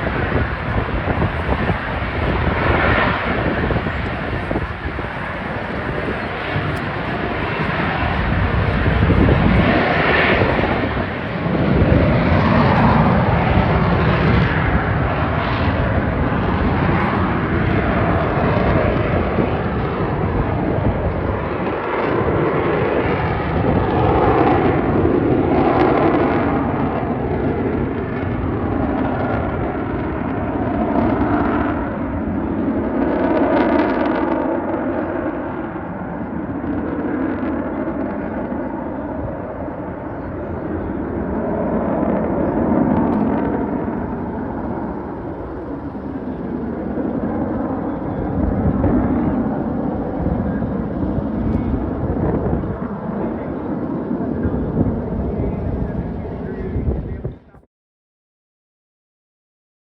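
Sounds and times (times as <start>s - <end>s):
military aircraft engine roar: 0.0s - 57.7s.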